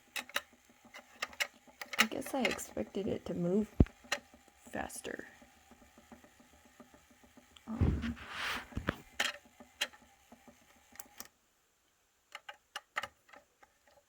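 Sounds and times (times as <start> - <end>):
small machine running: 0.0 - 7.8
plastic clicks and taps: 3.7 - 4.2.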